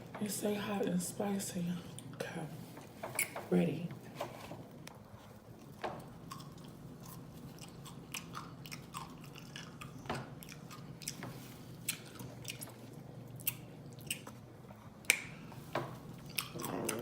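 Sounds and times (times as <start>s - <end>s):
person chewing crunchy pickles: 5.6s - 15.2s, 16.1s - 17.0s.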